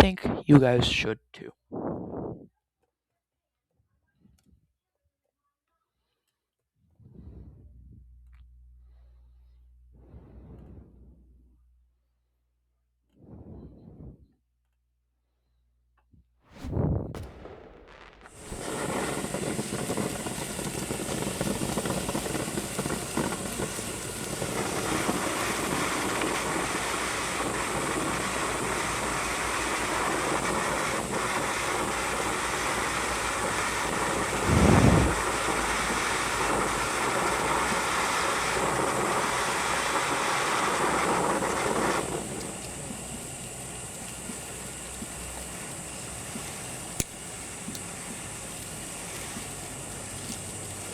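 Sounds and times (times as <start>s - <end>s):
firework fountain hissing: 16.5s - 50.9s
loud low thump: 16.6s - 20.7s.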